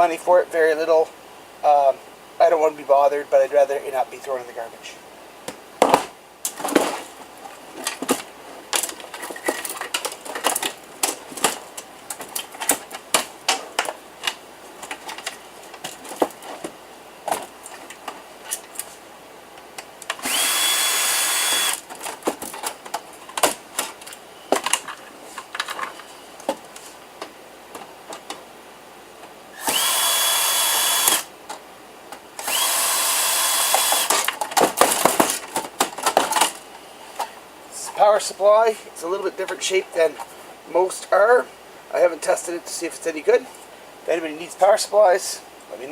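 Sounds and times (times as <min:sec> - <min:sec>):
power drill motor whining: 0:20.2 - 0:21.8, 0:29.6 - 0:31.3, 0:32.4 - 0:34.2.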